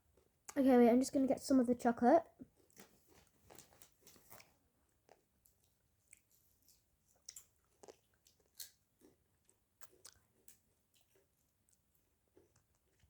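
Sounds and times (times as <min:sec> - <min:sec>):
chewing with small crunches: 0:02.4 - 0:13.0.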